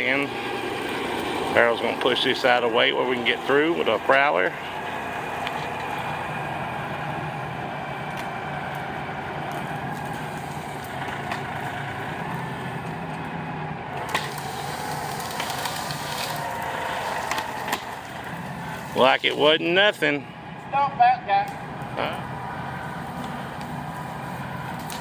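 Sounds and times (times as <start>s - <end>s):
tractor engine under load: 0.0s - 25.0s
wood snapping: 8.0s - 11.7s, 12.8s - 18.5s, 24.7s - 25.0s.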